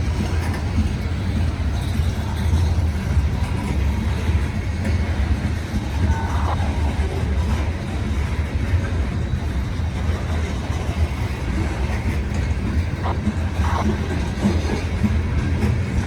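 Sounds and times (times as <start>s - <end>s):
train cars rumbling past: 0.0s - 16.0s.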